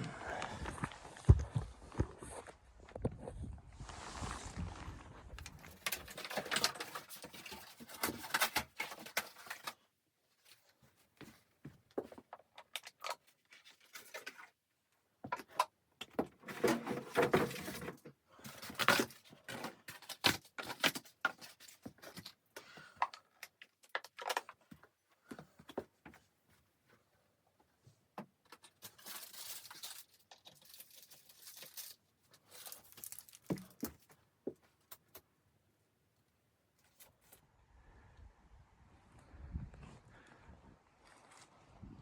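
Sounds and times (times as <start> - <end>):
clicks and knocks of handling: 15.2 - 26.2.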